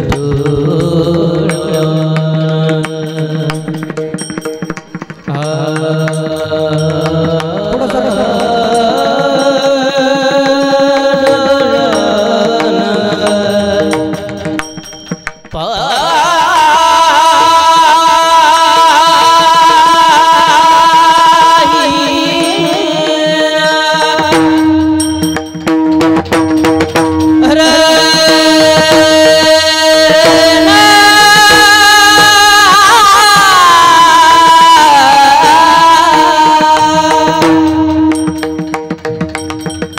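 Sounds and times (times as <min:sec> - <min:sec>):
devotional singing: 0:00.0 - 0:04.2, 0:05.3 - 0:25.3, 0:27.4 - 0:38.4
instrumental accompaniment: 0:00.0 - 0:39.9.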